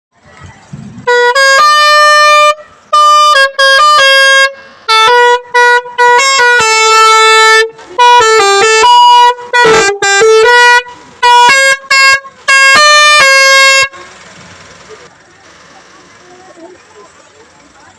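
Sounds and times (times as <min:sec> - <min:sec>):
multi-tone air horn playing a tune: 0:01.0 - 0:14.2.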